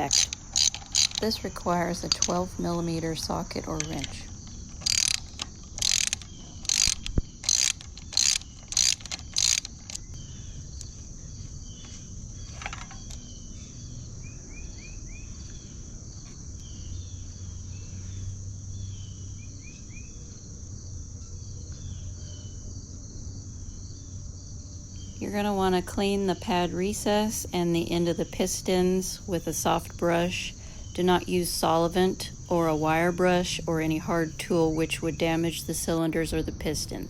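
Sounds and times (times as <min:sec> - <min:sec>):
ratchet clicking: 0:00.0 - 0:02.6, 0:03.6 - 0:10.1
high drone of insects: 0:00.0 - 0:37.0.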